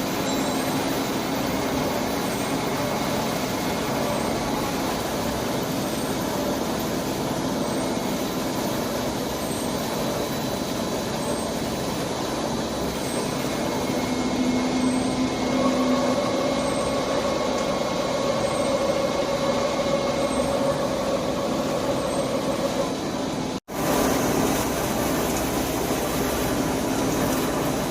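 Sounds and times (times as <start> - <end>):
lathe machine running: 0.0 - 27.9
faint high chirp: 0.2 - 0.8.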